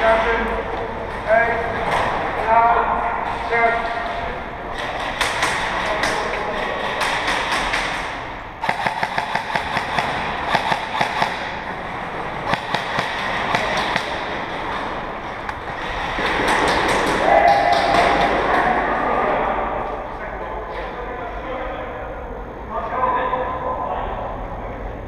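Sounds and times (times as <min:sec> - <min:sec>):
airsoft guns firing: 0:03.2 - 0:18.6.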